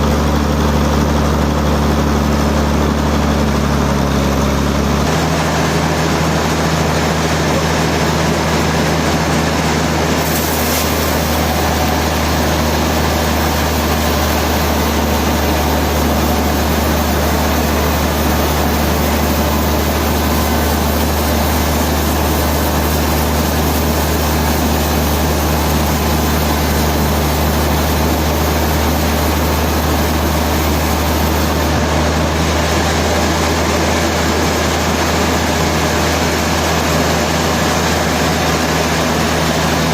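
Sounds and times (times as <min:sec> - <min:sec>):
heavy machinery humming: 0:00.0 - 0:39.9.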